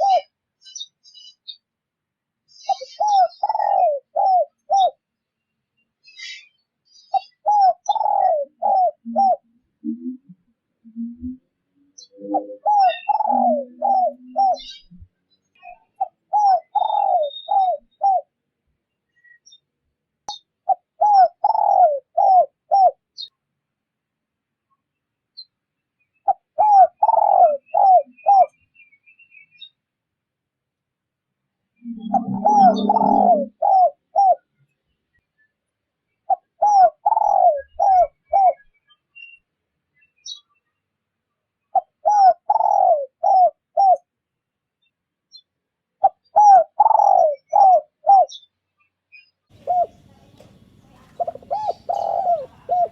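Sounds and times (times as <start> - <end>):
dove cooing: 0.0 - 0.3, 2.7 - 5.0, 7.1 - 11.5, 12.1 - 14.9, 16.0 - 18.3, 20.7 - 23.0, 26.3 - 28.6, 31.8 - 34.4, 36.3 - 38.6, 41.7 - 44.0, 46.0 - 48.4, 49.5 - 52.9
faint high chirps: 48.4 - 52.9.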